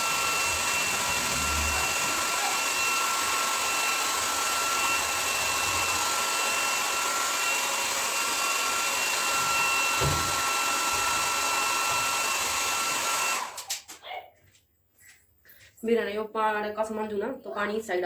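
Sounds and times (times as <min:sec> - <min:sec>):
hair dryer running: 0:00.0 - 0:13.8.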